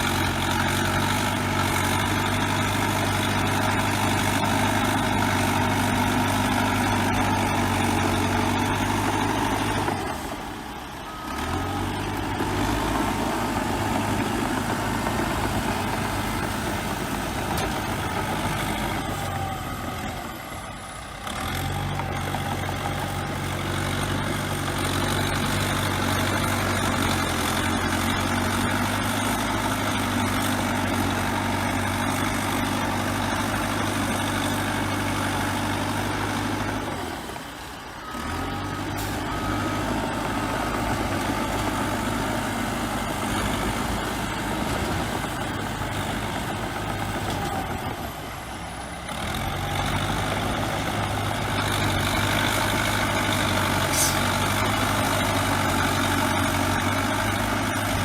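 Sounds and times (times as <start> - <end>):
bulldozer diesel engine running: 0.0 - 58.0.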